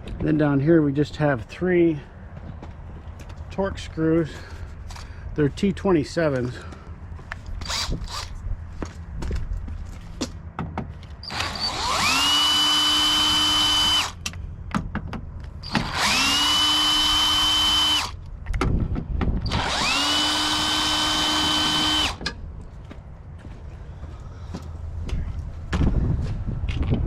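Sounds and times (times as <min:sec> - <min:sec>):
power drill whining: 0:07.6 - 0:08.3, 0:11.2 - 0:14.2, 0:15.6 - 0:18.2, 0:19.5 - 0:22.2.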